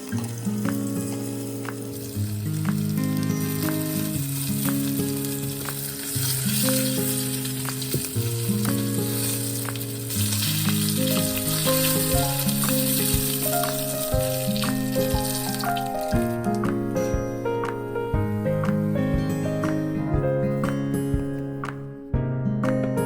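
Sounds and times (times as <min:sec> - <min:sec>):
food sizzling in a pan: 0:00.0 - 0:18.0
soft background music: 0:00.0 - 0:23.0.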